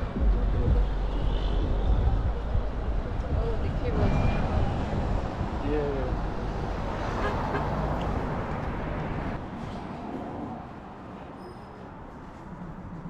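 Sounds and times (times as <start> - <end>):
low outdoor rumble: 0.0 - 9.4.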